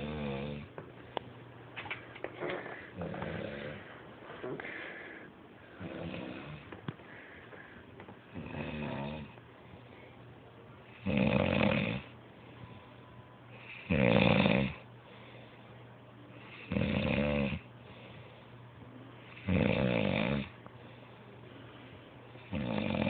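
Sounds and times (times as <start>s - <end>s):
loud rasping snores: 0.0s - 0.7s, 3.0s - 3.8s, 5.8s - 6.6s, 8.4s - 9.3s, 11.0s - 12.1s, 13.7s - 14.8s, 16.6s - 17.6s, 19.4s - 20.5s, 22.5s - 23.0s
quiet breathing: 2.2s - 11.0s, 12.0s - 13.9s, 14.8s - 16.8s, 17.6s - 19.5s, 20.5s - 22.6s.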